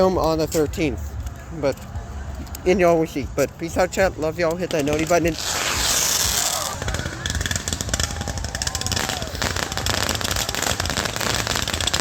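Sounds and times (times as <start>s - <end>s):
fireworks crackling pops: 4.4s - 12.0s.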